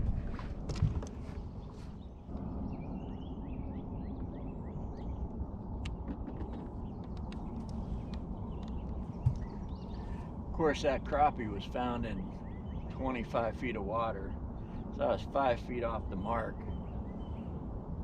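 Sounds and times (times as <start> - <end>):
low rumble: 0.0 - 12.6
birds chirping: 0.0 - 17.8.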